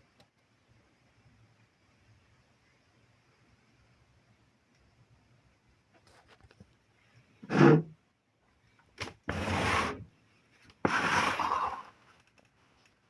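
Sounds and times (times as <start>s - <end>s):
rubbing scraping sounds: 7.4s - 7.9s, 9.3s - 10.0s, 10.9s - 11.8s.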